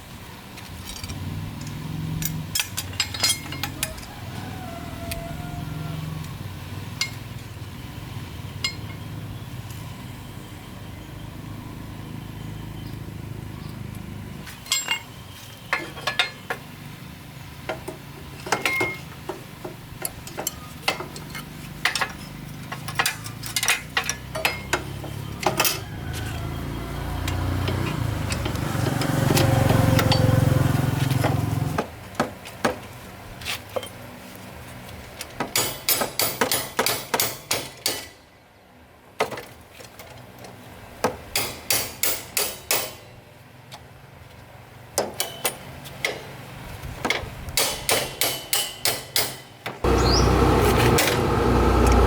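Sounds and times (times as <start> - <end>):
metal tools clinking: 0.8 - 4.1, 14.6 - 16.5, 18.4 - 19.1, 20.2 - 24.9.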